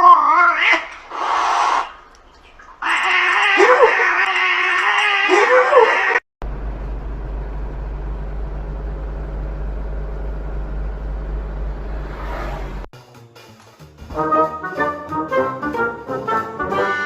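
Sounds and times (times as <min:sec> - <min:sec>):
animal wavering cries: 0:00.0 - 0:06.2
low motor hum: 0:06.4 - 0:12.9.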